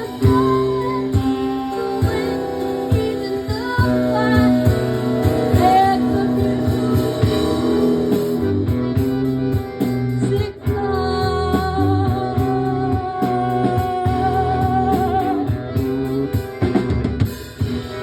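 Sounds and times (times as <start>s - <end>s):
wordless singing: 0.0s - 8.6s.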